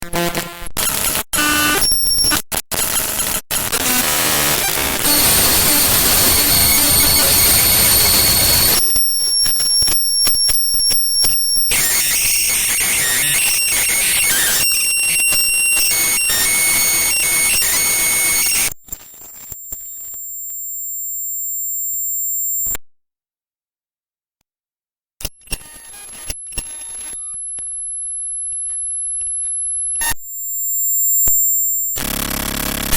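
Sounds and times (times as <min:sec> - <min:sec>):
thin high whine: 0:05.0 - 0:18.7
distorted hiss with whistling tones: 0:05.0 - 0:20.1.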